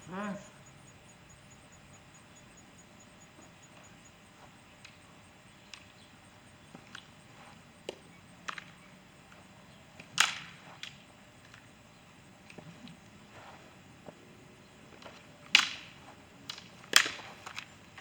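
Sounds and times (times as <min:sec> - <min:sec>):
swords clacking: 0:15.5 - 0:17.7.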